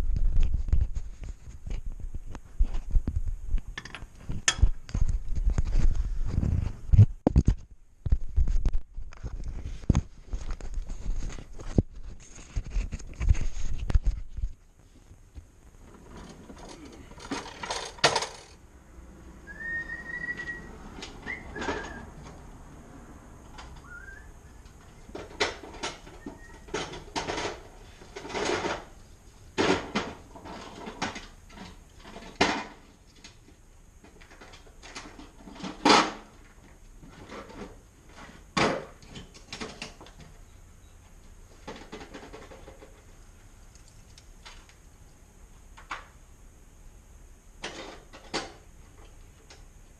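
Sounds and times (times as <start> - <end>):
short high whistle: 19.5 - 20.7, 21.3 - 22.1, 23.8 - 24.3.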